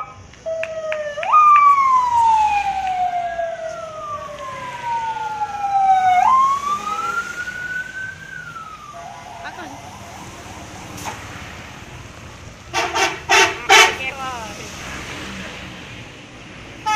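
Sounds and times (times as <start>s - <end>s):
bus electronic siren wailing: 0.0s - 14.2s.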